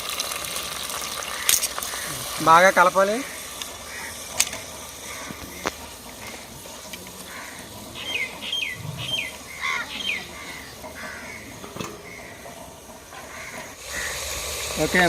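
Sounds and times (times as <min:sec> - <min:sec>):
faint hiss of frying: 0:00.0 - 0:15.0
bird squawking: 0:03.2 - 0:04.3, 0:05.0 - 0:06.5, 0:07.2 - 0:12.4, 0:13.3 - 0:14.2.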